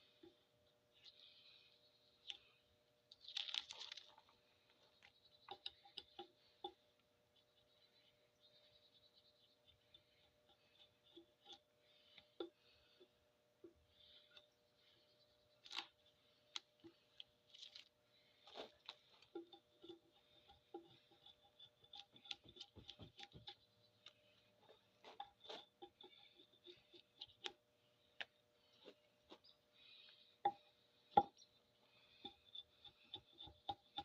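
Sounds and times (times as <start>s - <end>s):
hand tool scraping bark: 18.5s - 23.6s, 24.6s - 27.6s, 32.0s - 34.0s.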